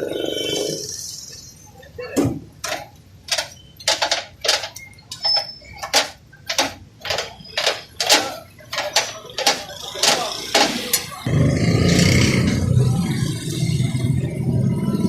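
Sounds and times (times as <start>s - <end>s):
short sharp knocks: 2.6s - 11.1s.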